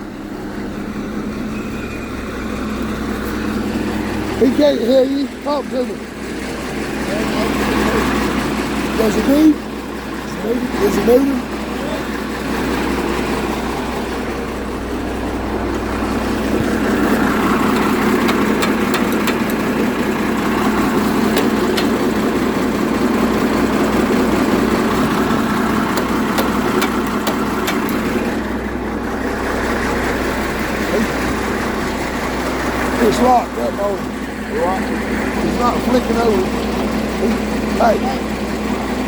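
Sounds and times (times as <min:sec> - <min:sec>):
vehicle engine revving: 0:00.0 - 0:39.0
faint clicks and ticks: 0:17.7 - 0:19.7.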